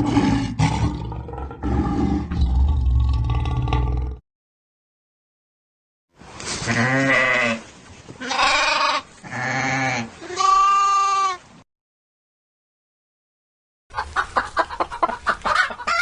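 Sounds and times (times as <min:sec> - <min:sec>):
farm animal bleating: 0:06.7 - 0:11.4.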